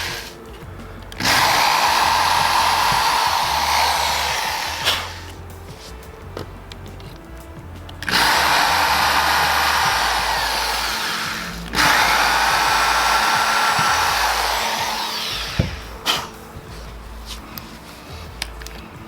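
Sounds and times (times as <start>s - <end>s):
power drill running: 0.0s - 0.4s, 1.1s - 5.4s, 8.0s - 16.4s.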